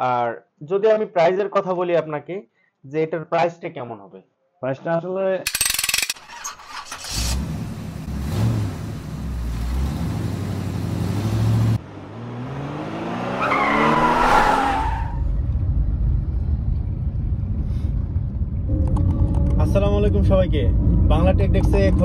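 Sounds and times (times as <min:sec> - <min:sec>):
car engine revving: 0:06.7 - 0:15.2.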